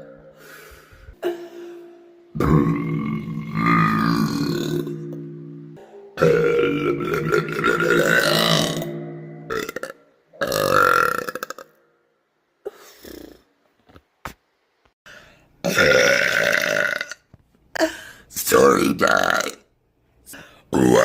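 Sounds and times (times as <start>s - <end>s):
woman burping: 1.2s - 11.8s, 15.6s - 17.2s.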